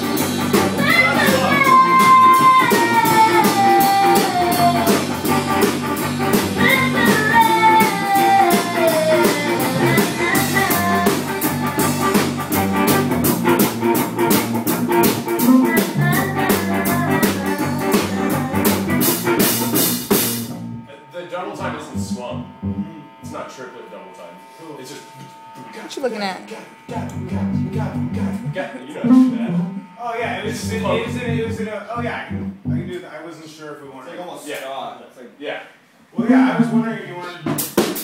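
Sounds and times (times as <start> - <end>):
band playing blues-jazz groove: 0.0 - 20.8, 26.9 - 32.9, 36.4 - 38.0.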